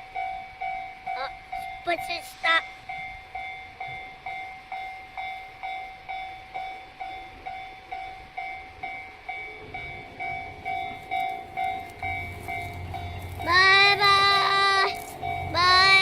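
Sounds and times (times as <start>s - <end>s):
level-crossing alarm bell ringing: 0.0s - 16.0s
train rumbling: 0.0s - 16.0s.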